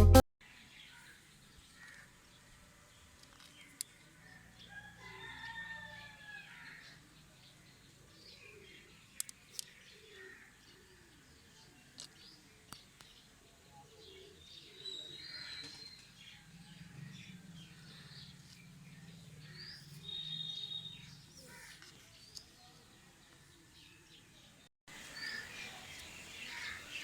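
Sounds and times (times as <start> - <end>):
birds chirping: 14.0 - 22.6, 24.9 - 27.0.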